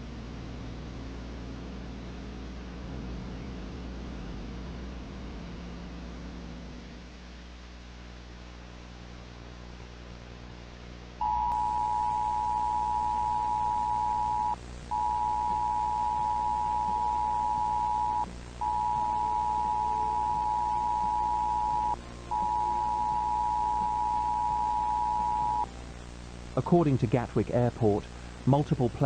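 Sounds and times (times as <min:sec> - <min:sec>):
low steady hum: 0:00.0 - 0:29.0
high steady beep: 0:11.2 - 0:25.7.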